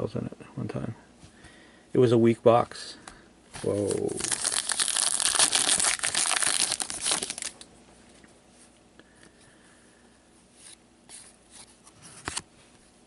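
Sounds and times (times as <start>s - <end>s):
wrapper crinkling and tearing: 3.6s - 7.7s.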